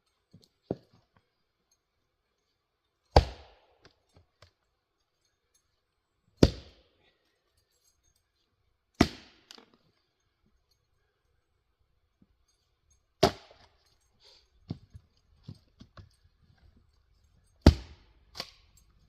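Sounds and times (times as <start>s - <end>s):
axe splitting firewood: 3.1s - 4.5s, 6.4s - 6.9s, 9.0s - 9.8s, 13.2s - 13.9s, 17.5s - 18.8s.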